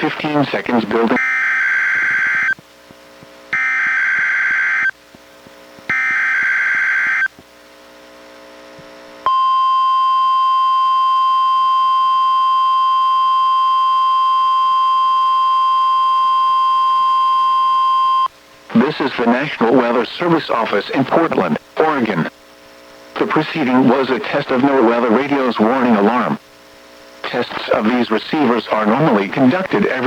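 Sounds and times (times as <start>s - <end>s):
steady warning alarm tone: 1.0s - 2.6s, 3.5s - 5.0s, 5.8s - 7.4s, 9.3s - 18.3s.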